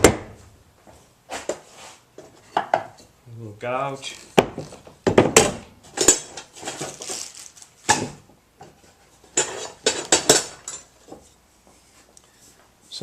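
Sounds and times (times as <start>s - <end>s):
sharp knocks: 0.0s - 0.4s, 4.4s - 5.7s.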